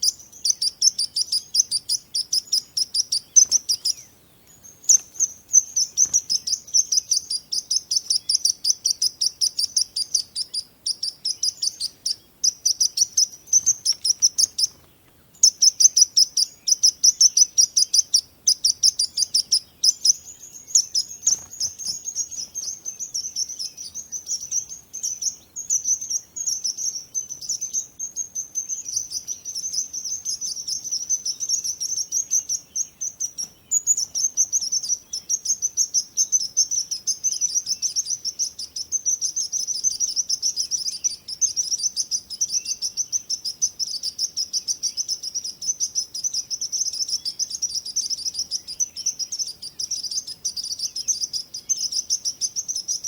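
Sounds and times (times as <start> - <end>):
small birds chirping chorus: 0.0 - 53.0.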